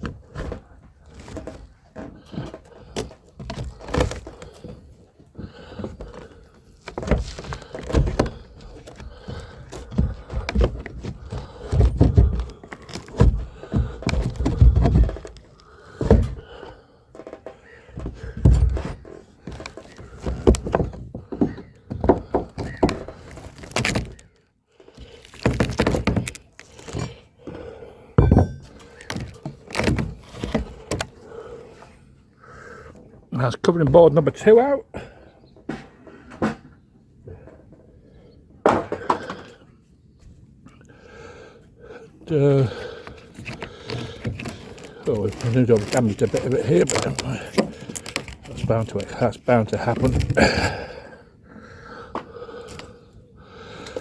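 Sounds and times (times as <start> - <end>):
wood knocking and cracking: 0.0 - 4.8, 5.4 - 31.4, 42.4 - 51.1.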